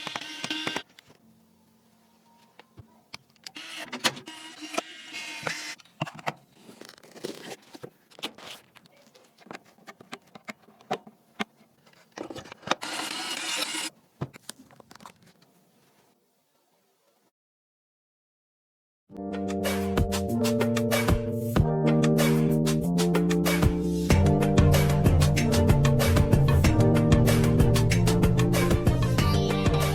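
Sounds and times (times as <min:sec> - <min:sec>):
small electric motor whirring: 0:00.0 - 0:00.8, 0:03.5 - 0:05.8, 0:12.8 - 0:13.9.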